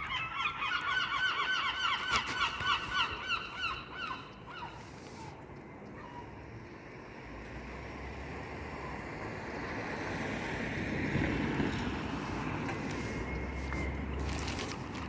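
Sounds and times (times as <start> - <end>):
wind rumble on microphone: 1.9 - 15.0
vehicle passing on road: 4.4 - 15.0.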